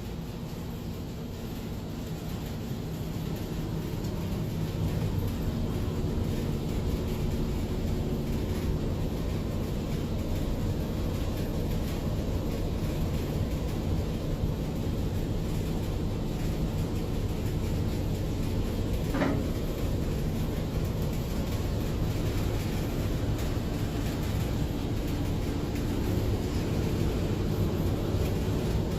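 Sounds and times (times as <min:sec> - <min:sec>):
low droning machinery rumble: 0:00.0 - 0:28.9.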